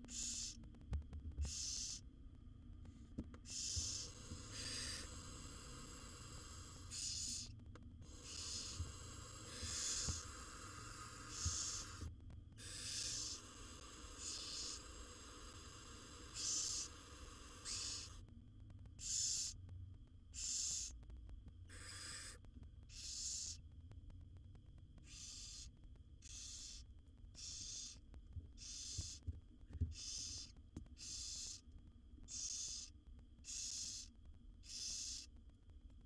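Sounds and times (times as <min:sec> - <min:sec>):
owl nestlings hissing: 0:00.0 - 0:00.6, 0:01.4 - 0:02.0, 0:03.4 - 0:18.3, 0:19.0 - 0:19.6, 0:20.4 - 0:21.0, 0:21.7 - 0:23.6, 0:25.0 - 0:28.0, 0:28.6 - 0:29.2, 0:29.9 - 0:31.6, 0:32.3 - 0:35.3.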